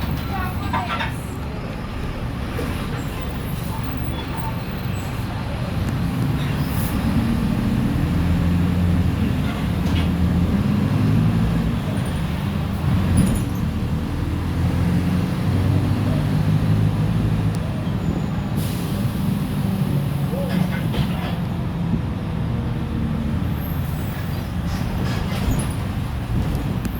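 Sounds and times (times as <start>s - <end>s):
bus diesel engine running: 0.0s - 26.9s.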